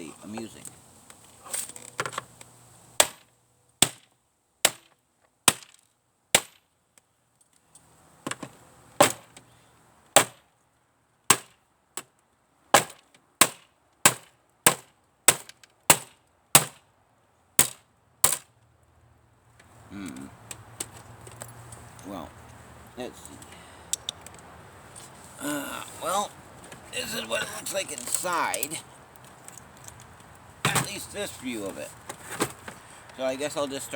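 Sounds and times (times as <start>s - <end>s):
hard blows on equipment casing: 3.0s - 6.6s, 8.2s - 9.4s, 10.1s - 10.5s, 12.7s - 16.8s, 29.6s - 31.2s.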